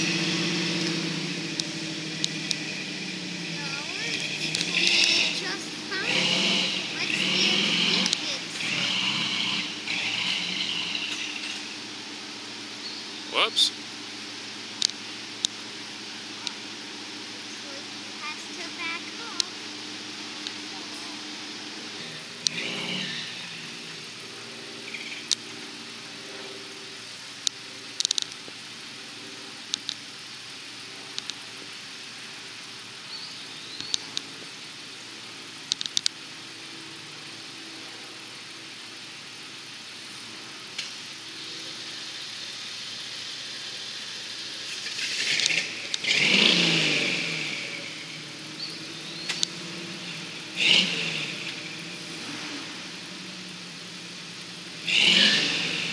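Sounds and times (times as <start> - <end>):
engine running and revving: 0.0 - 55.9
sharp clicks: 0.8 - 2.7, 4.2 - 5.4, 6.6 - 8.8, 14.8 - 15.6, 27.4 - 28.6, 29.7 - 30.0, 31.1 - 31.4, 33.8 - 34.4, 35.7 - 36.2, 44.8 - 46.2, 49.2 - 49.6.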